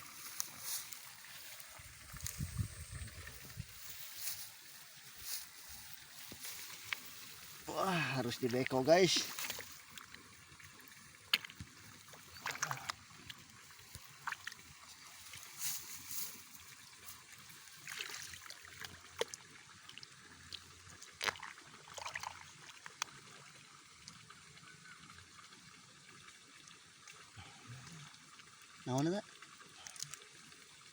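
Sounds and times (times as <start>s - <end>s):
water and mud splashing: 0.0s - 24.2s.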